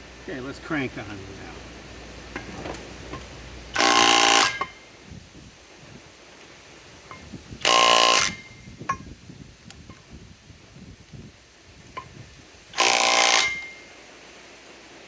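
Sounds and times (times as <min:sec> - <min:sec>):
impact wrench hammering: 0:03.1 - 0:04.8, 0:12.8 - 0:13.8.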